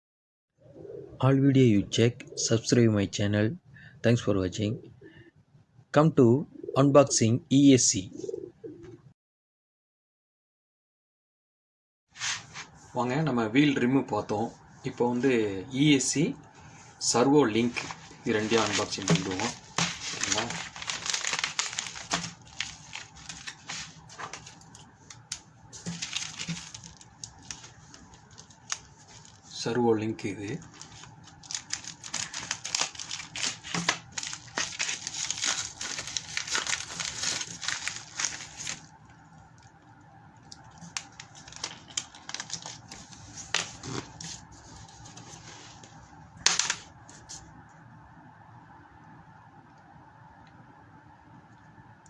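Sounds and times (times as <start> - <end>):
plastic packaging crinkling: 17.6 - 29.6, 30.4 - 39.8, 40.4 - 46.9.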